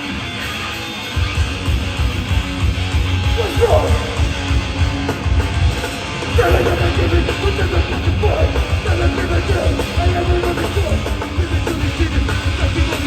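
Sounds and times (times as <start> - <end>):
distorted electric guitar riffing: 0.0 - 13.0
drums: 0.0 - 13.0
loud bass: 0.0 - 13.0.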